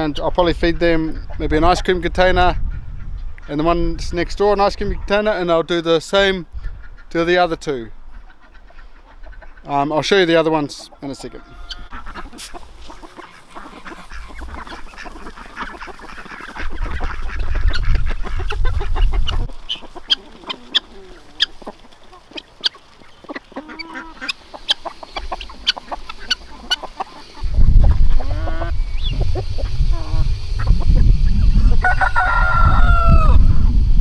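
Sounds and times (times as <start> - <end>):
ducks quacking: 8.0 - 33.6
low rumble: 27.4 - 34.0.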